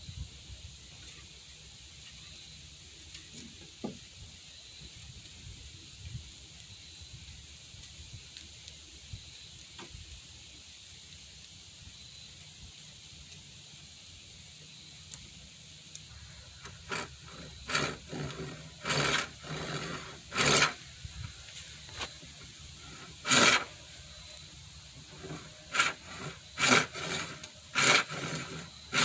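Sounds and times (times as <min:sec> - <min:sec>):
hand saw cutting wood: 0:16.2 - 0:29.0.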